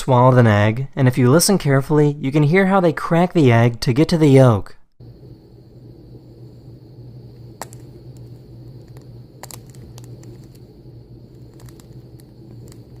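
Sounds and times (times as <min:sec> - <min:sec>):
steady low hum: 0:05.0 - 0:13.0
eggshell cracking: 0:07.4 - 0:13.0.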